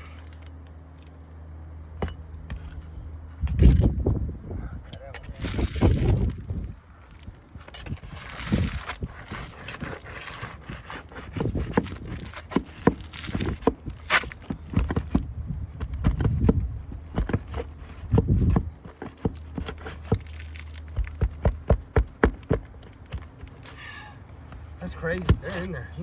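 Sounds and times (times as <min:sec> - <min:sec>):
low rumbles: 0:00.0 - 0:09.6, 0:11.4 - 0:26.0
roof shingles being pried up: 0:05.2 - 0:25.7.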